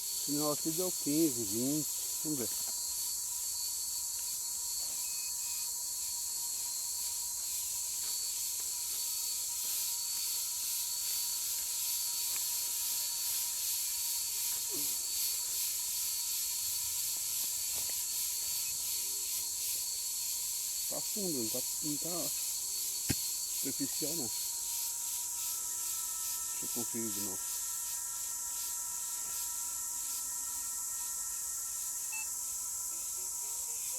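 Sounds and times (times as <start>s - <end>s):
insects chirping: 0.0s - 33.9s
thin constant tone: 0.0s - 33.9s.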